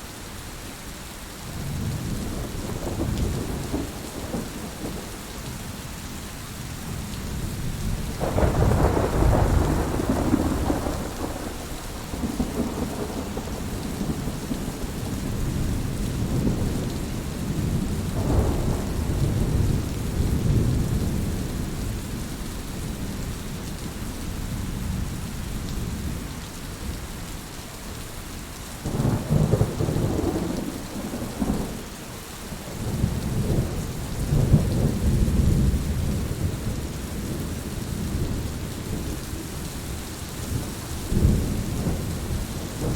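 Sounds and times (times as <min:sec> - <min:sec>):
steady rain: 0:00.0 - 0:42.9
rolling thunder: 0:01.6 - 0:05.7, 0:06.9 - 0:22.0, 0:28.8 - 0:31.9, 0:32.6 - 0:42.9.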